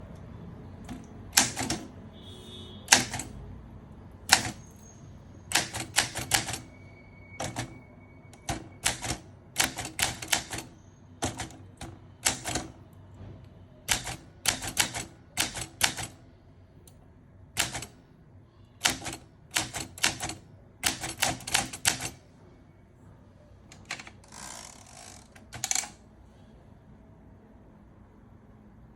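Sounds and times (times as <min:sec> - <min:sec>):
typewriter carriage rasping: 0:00.9 - 0:02.0, 0:02.9 - 0:03.4, 0:04.3 - 0:04.8, 0:05.5 - 0:06.8, 0:07.4 - 0:12.8, 0:13.9 - 0:16.2, 0:17.6 - 0:18.0, 0:18.8 - 0:22.2, 0:23.7 - 0:26.0
typewriter key strikes: 0:00.9 - 0:02.0, 0:02.9 - 0:03.3, 0:04.3 - 0:04.7, 0:05.5 - 0:06.7, 0:07.4 - 0:07.8, 0:08.4 - 0:12.8, 0:13.9 - 0:16.2, 0:17.6 - 0:18.0, 0:18.8 - 0:22.2, 0:25.4 - 0:26.0.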